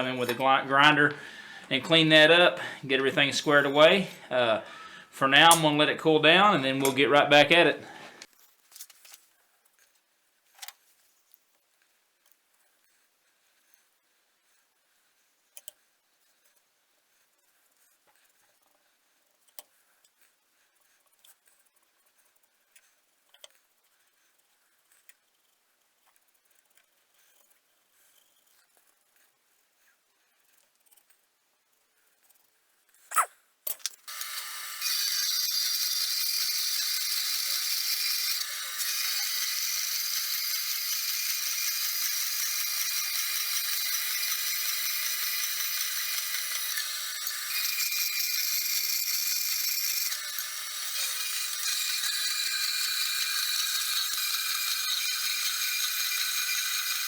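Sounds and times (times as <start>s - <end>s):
grinder grinding steel blade: 0.0s - 8.3s, 34.0s - 57.0s.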